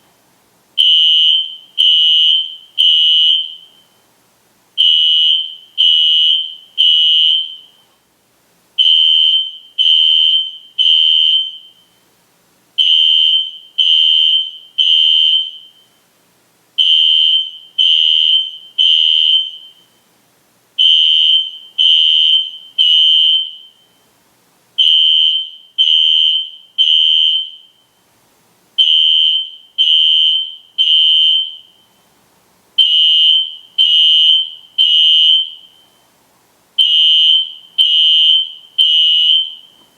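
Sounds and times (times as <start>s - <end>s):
fire alarm horn blasts: 0.8s - 4.0s, 4.8s - 7.8s, 8.8s - 12.0s, 12.8s - 16.0s, 16.8s - 20.0s, 20.8s - 24.0s, 24.8s - 28.0s, 28.8s - 32.0s, 32.8s - 36.0s, 36.8s - 39.8s.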